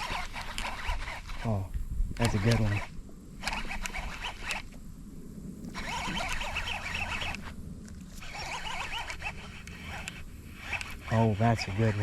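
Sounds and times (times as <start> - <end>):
fishing reel ratchet rasping: 0.0 - 1.5, 2.2 - 4.7, 8.2 - 12.0.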